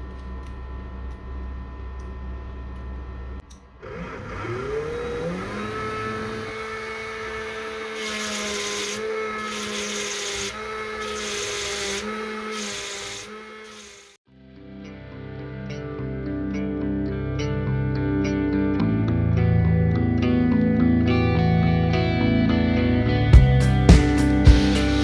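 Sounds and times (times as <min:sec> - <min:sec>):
small motor whining: 0:03.8 - 0:14.2, 0:24.5 - 0:25.0
grinding hiss: 0:04.4 - 0:14.2, 0:24.5 - 0:25.0.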